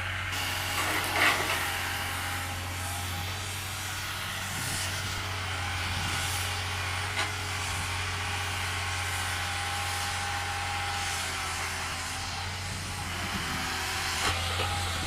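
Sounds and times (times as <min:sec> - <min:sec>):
excavator engine running: 0:00.0 - 0:15.0.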